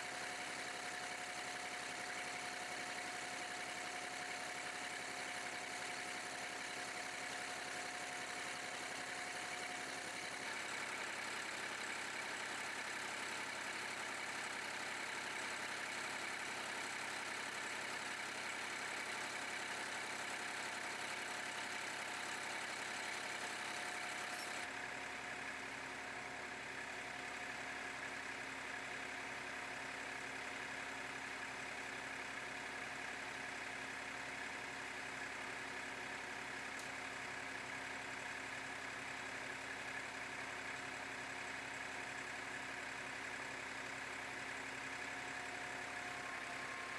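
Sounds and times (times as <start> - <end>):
tractor engine idling: 36.4 - 46.9.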